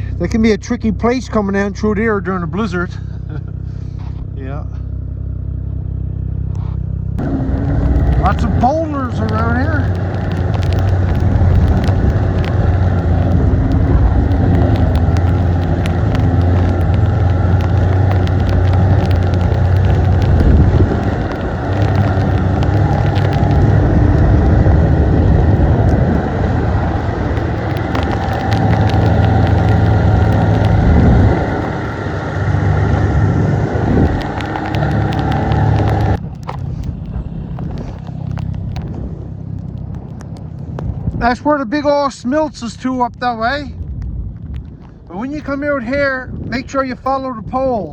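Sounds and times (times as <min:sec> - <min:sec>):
snowmobile engine running: 0:06.5 - 0:38.0.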